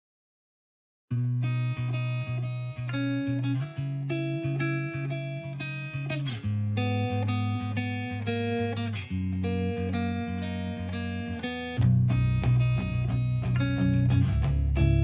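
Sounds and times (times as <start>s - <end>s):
plucked guitar music: 1.1s - 15.0s.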